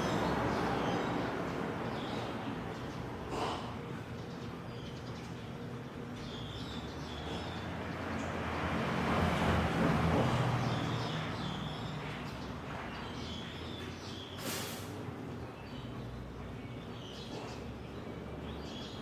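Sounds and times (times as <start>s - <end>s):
small birds chirping: 0.0s - 19.0s
vehicle passing: 6.9s - 15.3s.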